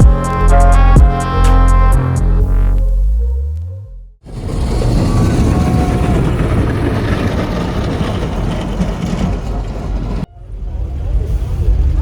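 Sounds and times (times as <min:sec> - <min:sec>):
electronic background music: 0:00.0 - 0:04.2
car engines rumbling: 0:04.2 - 0:12.0.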